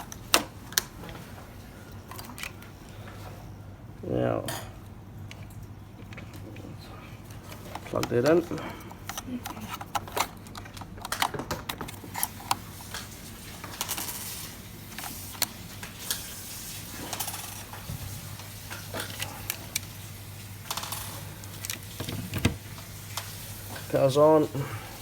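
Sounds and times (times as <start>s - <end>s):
plastic clicks and rattles: 7.4s - 13.1s.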